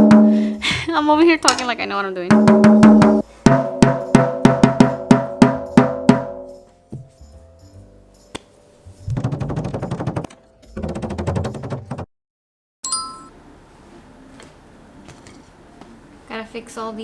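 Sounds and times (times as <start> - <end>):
tom drum hits ringing: 2.4 - 7.1
fast light taps on drum: 9.1 - 12.1.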